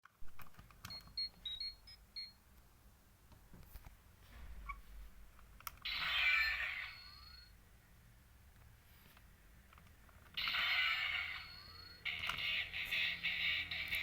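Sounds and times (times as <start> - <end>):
toy electronic sound effect: 5.8 - 7.6, 10.4 - 14.0.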